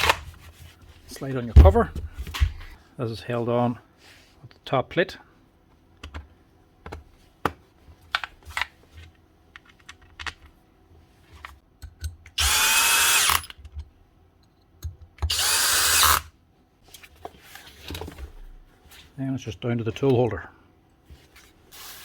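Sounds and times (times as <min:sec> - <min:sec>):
power drill-driver whirring: 0:12.4 - 0:13.5, 0:15.2 - 0:16.3.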